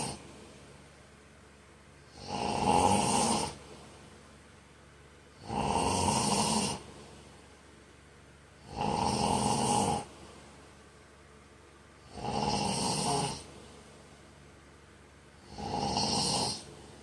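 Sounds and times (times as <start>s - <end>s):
man snoring: 0.0s - 0.2s, 2.1s - 3.6s, 5.4s - 6.9s, 8.6s - 10.1s, 12.0s - 13.5s, 15.4s - 16.7s
quiet breathing: 0.0s - 0.7s.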